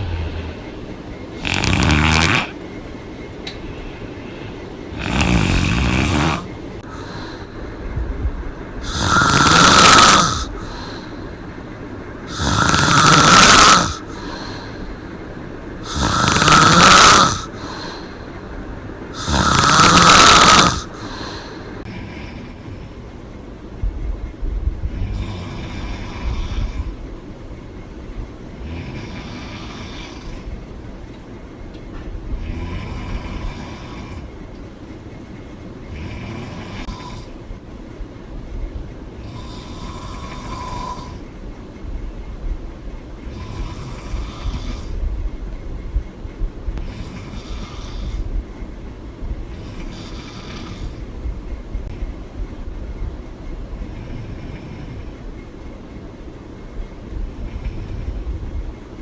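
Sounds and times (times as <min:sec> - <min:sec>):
woman snoring loudly: 0:01.4 - 0:02.6, 0:04.9 - 0:07.4, 0:08.8 - 0:11.0, 0:12.3 - 0:14.4, 0:15.8 - 0:17.8, 0:19.2 - 0:22.6, 0:24.9 - 0:26.9, 0:28.6 - 0:30.4, 0:32.4 - 0:34.3, 0:35.9 - 0:37.3, 0:39.2 - 0:41.2, 0:43.3 - 0:45.0, 0:49.6 - 0:51.0.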